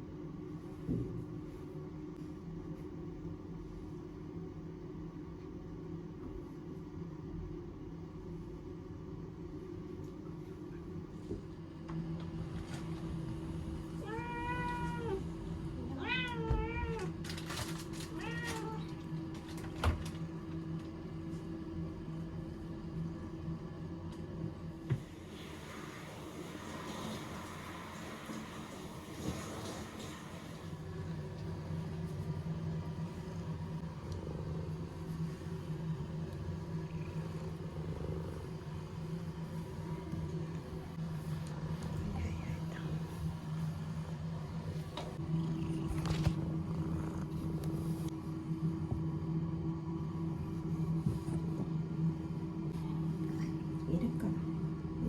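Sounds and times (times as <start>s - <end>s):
steady low hum: 0.0s - 55.0s
cat meowing: 15.9s - 17.1s
cat purring: 29.1s - 48.1s.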